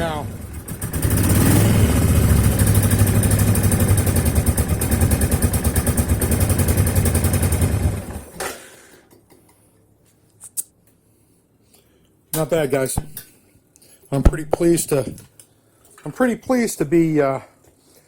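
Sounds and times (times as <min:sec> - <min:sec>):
motorcycle engine running: 0:00.0 - 0:08.3.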